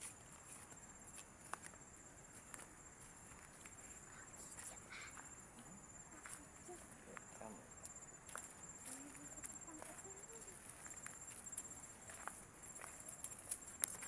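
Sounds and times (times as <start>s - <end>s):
insects trilling: 0.0s - 14.0s.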